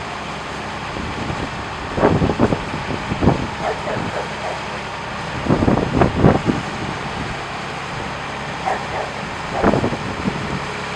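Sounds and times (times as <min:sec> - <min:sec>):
outdoor background noise: 0:00.0 - 0:10.9
short pitched calls: 0:03.6 - 0:05.0, 0:08.6 - 0:09.9.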